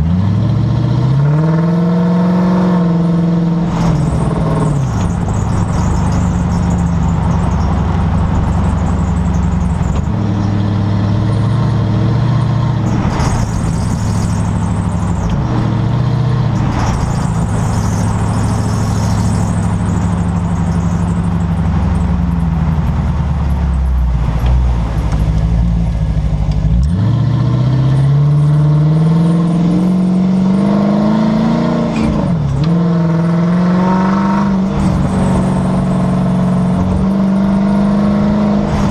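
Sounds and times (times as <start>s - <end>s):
road and driveline noise: 0.0s - 38.9s
pitched squeal from rear suspension: 3.8s - 10.5s, 12.8s - 15.4s, 16.5s - 22.5s.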